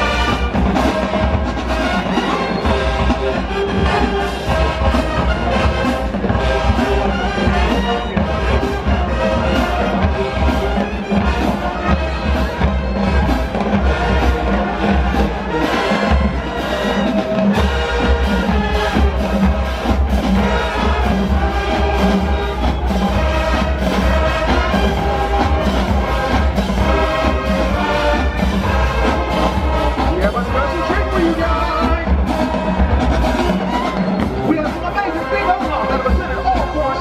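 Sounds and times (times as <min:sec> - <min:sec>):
brass horns: 0:00.0 - 0:37.0
steady drumbeat: 0:00.0 - 0:37.0.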